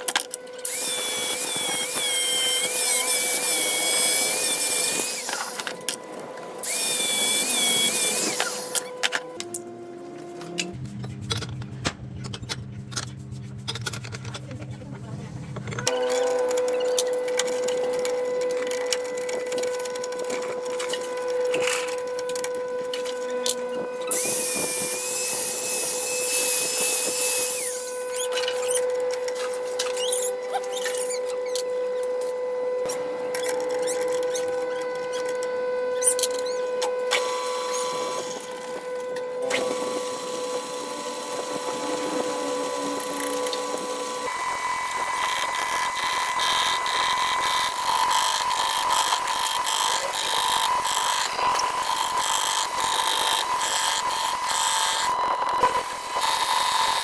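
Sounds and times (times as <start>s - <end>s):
power tool whining: 0.0s - 9.6s, 15.7s - 57.0s
harsh high-pitched grinding: 0.6s - 6.0s, 6.6s - 9.2s, 15.7s - 31.6s, 39.5s - 57.0s.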